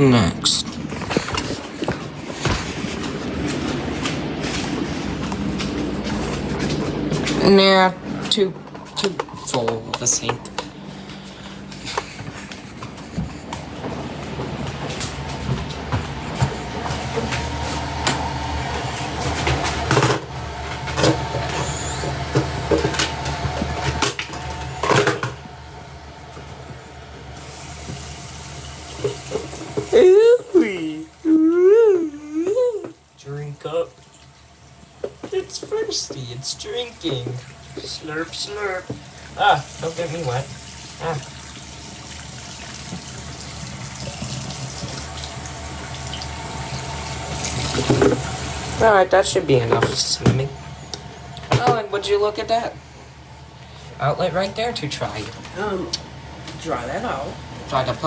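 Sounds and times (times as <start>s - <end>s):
steady hum: 0.0s - 42.4s
water running into a sink: 27.4s - 49.0s.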